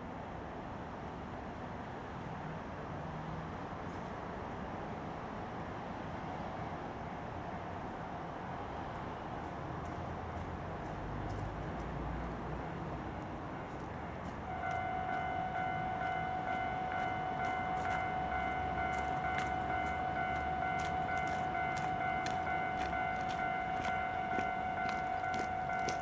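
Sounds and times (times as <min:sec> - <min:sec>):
diesel railcar approaching: 0:00.0 - 0:26.0
steady high tone: 0:14.5 - 0:26.0.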